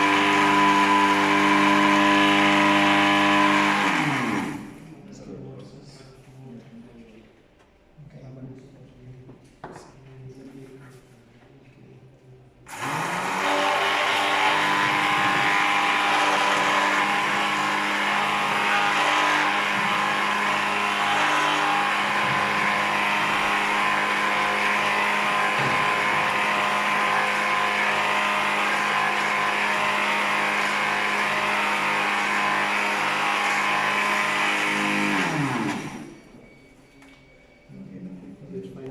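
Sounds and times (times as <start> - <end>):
blender motor whining: 0.0 - 4.9, 12.7 - 36.5.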